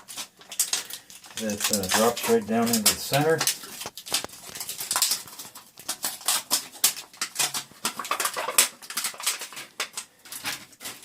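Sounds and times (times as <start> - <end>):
small parts clicking and rustling: 0.0 - 11.0.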